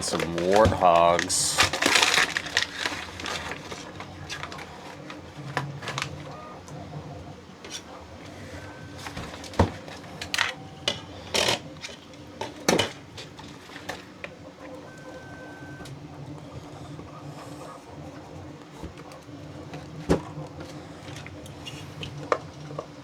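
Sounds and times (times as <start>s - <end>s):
low steady machine hum: 0.0s - 23.0s.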